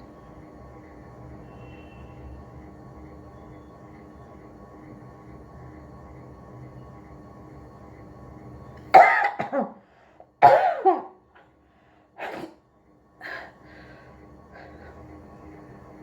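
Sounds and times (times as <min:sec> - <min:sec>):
person sneezing: 0:09.0 - 0:09.8, 0:10.4 - 0:11.1, 0:12.2 - 0:12.6
quiet breaths: 0:09.8 - 0:10.3, 0:11.5 - 0:12.2, 0:13.2 - 0:15.9.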